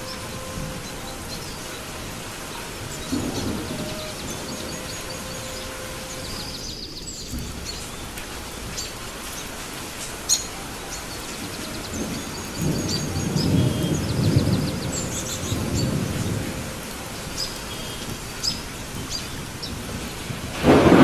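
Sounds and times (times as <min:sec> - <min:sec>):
steady rain: 0:00.0 - 0:21.0
thunder rumbling: 0:00.0 - 0:21.0.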